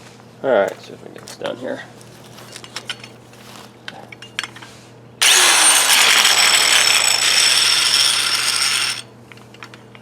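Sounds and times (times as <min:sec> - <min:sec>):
angle grinder cutting concrete: 0:05.2 - 0:09.1.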